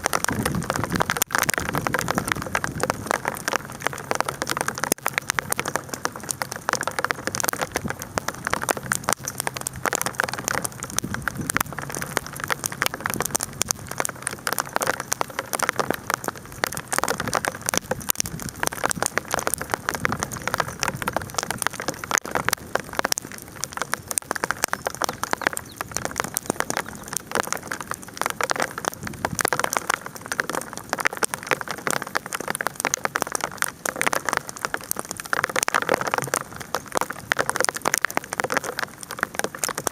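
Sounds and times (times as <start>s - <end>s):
campfire crackling: 0.0s - 39.9s
hail pattering: 0.0s - 39.9s.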